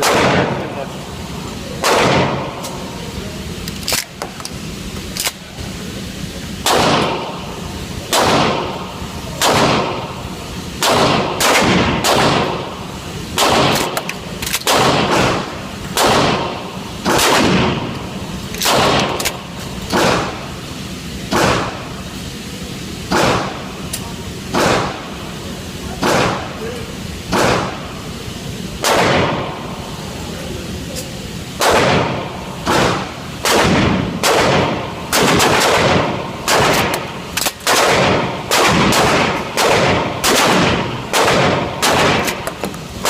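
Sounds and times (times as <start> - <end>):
shotgun shots echoing: 0.0 - 0.8, 1.8 - 2.7, 6.6 - 7.4, 8.1 - 10.1, 10.8 - 17.9, 18.6 - 20.4, 21.3 - 21.8, 23.1 - 23.6, 24.5 - 25.0, 26.0 - 26.5, 27.3 - 27.8, 28.8 - 29.6, 31.6 - 42.6.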